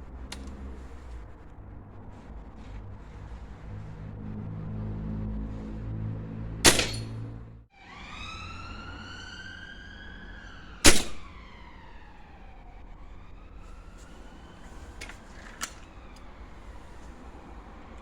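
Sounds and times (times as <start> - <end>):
air rifle shots: 6.7 - 7.2, 10.8 - 11.3
siren wailing: 7.7 - 17.8.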